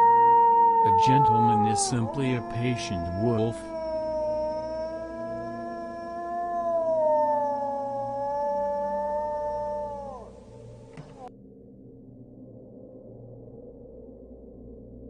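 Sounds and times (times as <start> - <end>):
wolf howling: 0.0 - 11.3.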